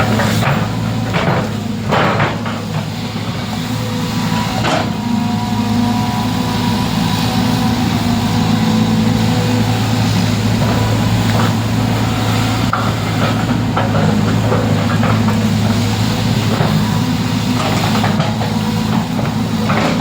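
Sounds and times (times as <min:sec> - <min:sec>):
engine running: 0:00.0 - 0:20.0.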